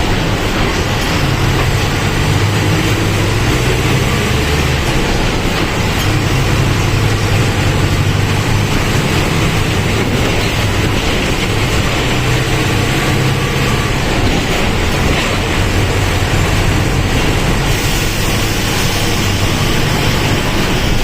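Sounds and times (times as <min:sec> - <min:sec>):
bus diesel engine running: 0:00.0 - 0:21.0.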